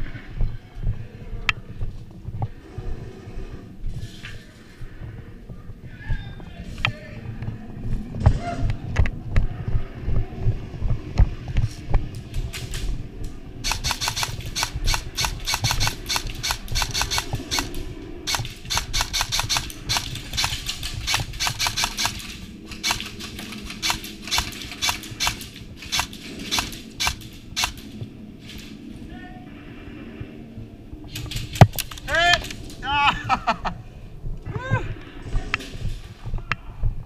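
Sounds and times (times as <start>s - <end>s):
airsoft guns firing: 13.6s - 28.0s.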